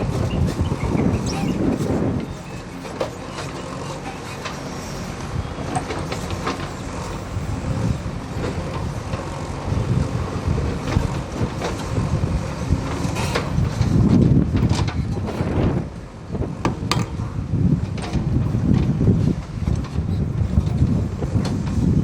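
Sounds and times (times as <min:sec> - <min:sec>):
light knocks and clanks: 0:16.7 - 0:17.2.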